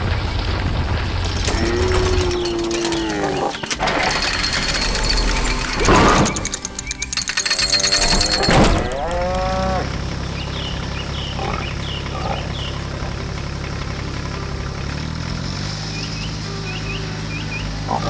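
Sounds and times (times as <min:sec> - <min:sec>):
birds chirping: 0:00.0 - 0:18.0
tractor engine running: 0:00.0 - 0:18.0
cow mooing: 0:08.0 - 0:10.0.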